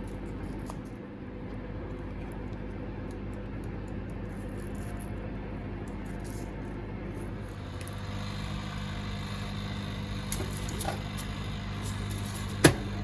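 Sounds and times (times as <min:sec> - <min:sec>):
machine humming: 0:03.8 - 0:13.0.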